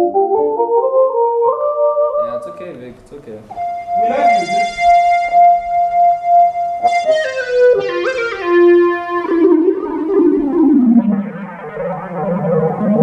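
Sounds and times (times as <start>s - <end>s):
synthesizer lead melody: 3.5s - 13.0s.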